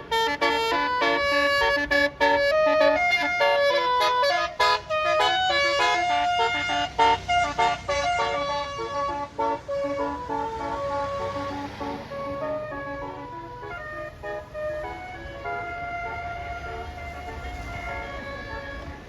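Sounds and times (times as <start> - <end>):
bus engine rumbling: 0.0 - 19.0
multi-trumpet bus horn melody: 0.0 - 19.0.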